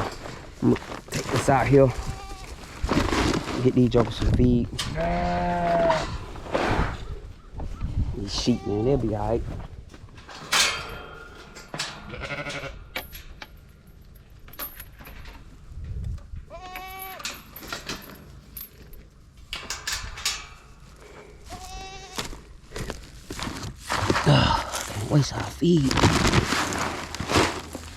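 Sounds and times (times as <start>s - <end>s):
livestock bleating: 1.9s - 2.6s, 4.8s - 6.2s, 12.1s - 12.8s, 21.4s - 22.4s
rustles and knocks: 9.5s - 21.3s, 22.1s - 27.9s.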